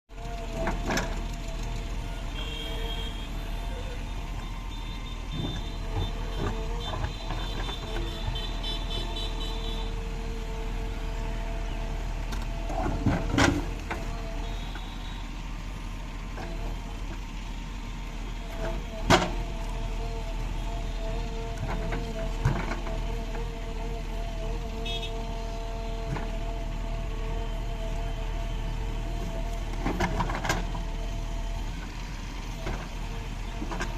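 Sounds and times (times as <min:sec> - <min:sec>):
diesel engine running: 0:00.1 - 0:33.9.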